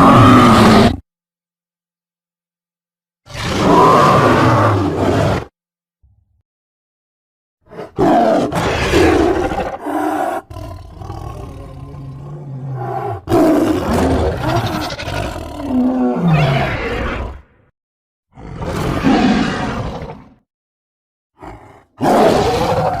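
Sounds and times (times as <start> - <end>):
dinosaur roars and growls: 0.0 - 1.0, 3.2 - 5.5, 7.7 - 17.7, 18.3 - 20.4, 21.4 - 23.0.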